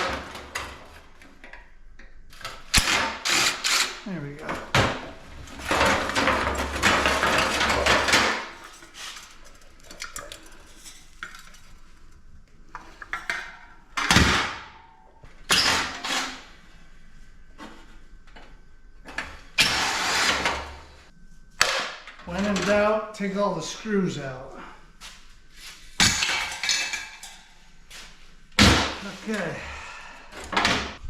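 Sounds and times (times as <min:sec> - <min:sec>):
loose metal parts clattering: 0:02.4 - 0:14.6, 0:26.0 - 0:28.1
metal clanks and knocks: 0:12.7 - 0:15.2.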